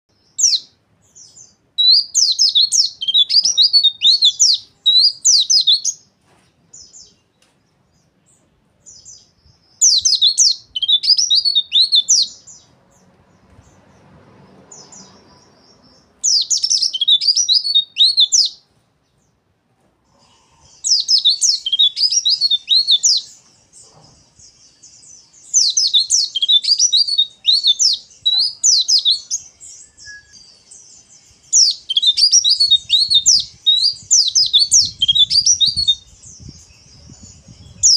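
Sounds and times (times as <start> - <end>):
bird twittering song: 0.1 - 6.1, 6.7 - 19.5, 20.1 - 37.9.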